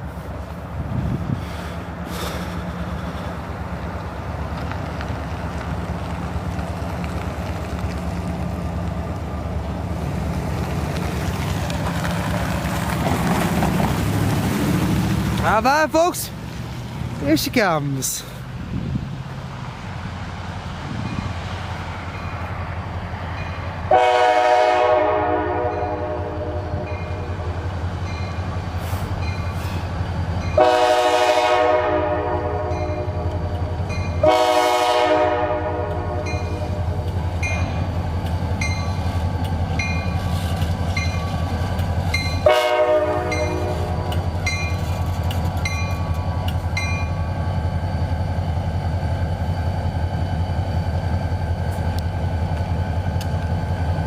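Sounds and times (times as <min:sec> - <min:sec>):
diesel locomotive engines rumbling: 0:00.0 - 0:54.0
train air horn blasts: 0:23.9 - 0:27.5, 0:30.6 - 0:33.4, 0:34.2 - 0:36.8, 0:42.4 - 0:44.1.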